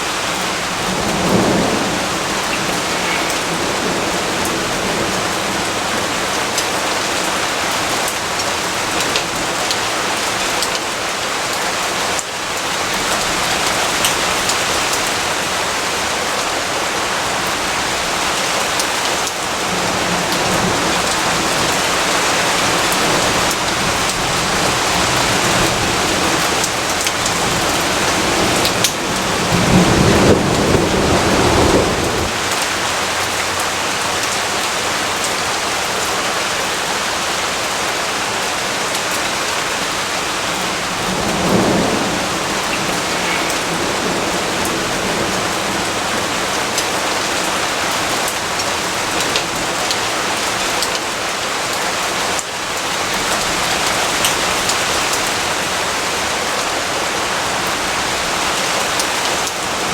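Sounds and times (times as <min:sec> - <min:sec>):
thunder rumbling: 0:00.0 - 0:06.6, 0:19.0 - 0:34.3, 0:39.8 - 0:49.2
rain falling: 0:00.0 - 0:59.9.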